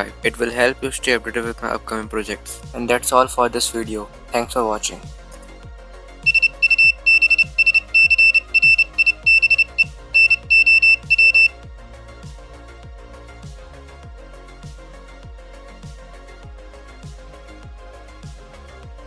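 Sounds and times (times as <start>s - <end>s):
background music with beat: 0.0s - 19.0s
buzzer beeping morse code: 6.3s - 11.5s.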